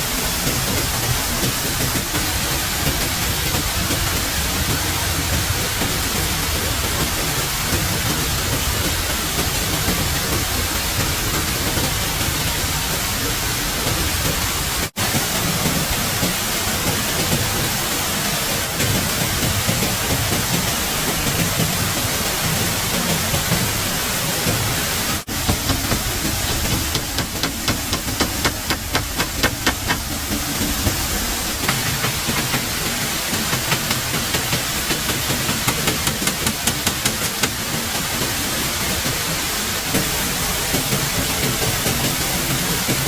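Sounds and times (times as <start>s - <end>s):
water rushing hiss: 0.0s - 43.0s
quick evenly spaced taps: 25.3s - 30.2s, 31.6s - 37.8s.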